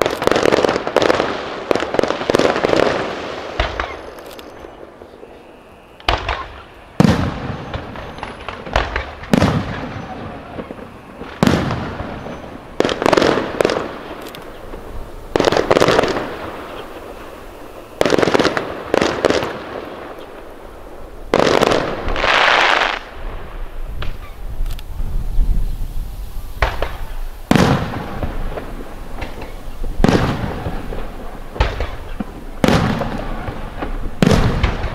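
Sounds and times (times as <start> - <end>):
firework shells bursting: 0.0 - 4.8, 5.9 - 20.5, 26.6 - 34.9
firework crackling: 0.0 - 34.9.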